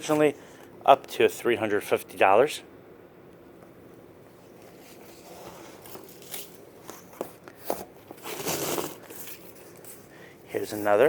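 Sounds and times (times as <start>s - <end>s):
packaging rustling: 4.8s - 10.2s.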